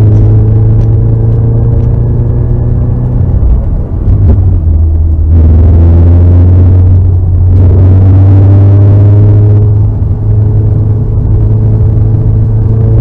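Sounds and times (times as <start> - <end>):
car engine droning: 0.0 - 13.0.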